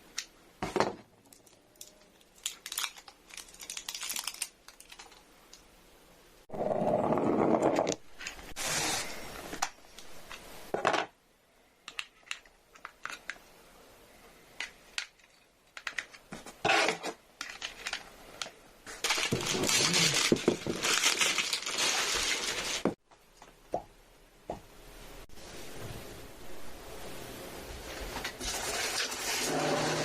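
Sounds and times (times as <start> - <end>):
plastic and cardboard crinkling: 1.2 - 5.3, 15.1 - 23.0.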